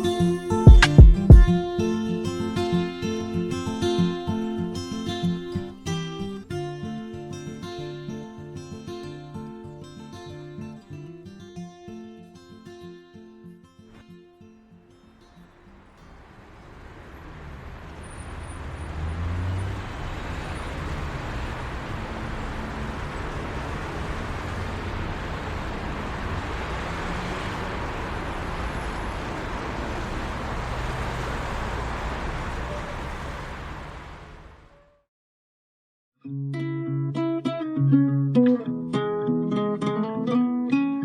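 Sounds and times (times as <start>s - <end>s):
road traffic rumble and hiss: 15.2s - 34.8s.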